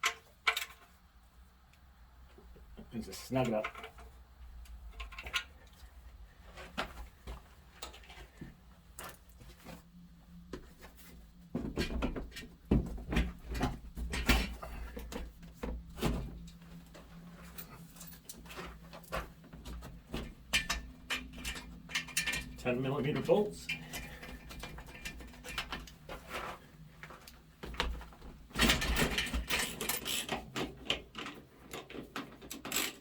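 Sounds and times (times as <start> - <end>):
car parts being handled: 10.4 - 33.0.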